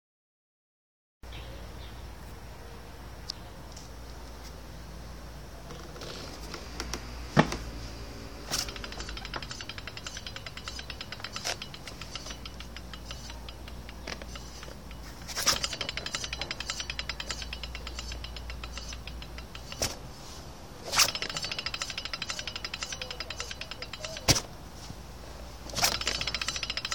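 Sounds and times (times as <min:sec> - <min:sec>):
motorbike wheel rapid ticking: 0:08.4 - 0:20.0, 0:20.9 - 0:24.6, 0:25.6 - 0:26.9.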